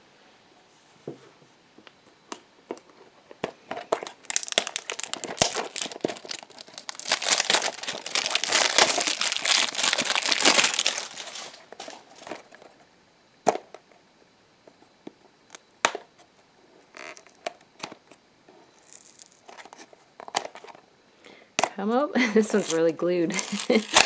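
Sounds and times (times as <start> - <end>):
packaging crinkling: 3.8 - 12.6, 22.4 - 24.0.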